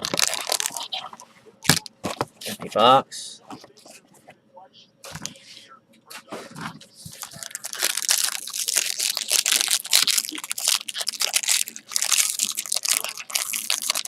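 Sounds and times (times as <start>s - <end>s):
packaging crinkling by hand: 0.0s - 2.0s, 7.1s - 14.0s.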